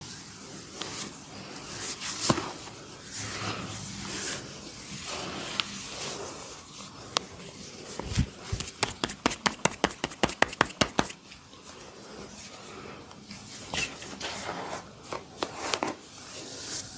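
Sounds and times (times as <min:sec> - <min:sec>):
hands rubbing head: 0:07.7 - 0:11.3
rapid sharp taps: 0:08.6 - 0:11.2.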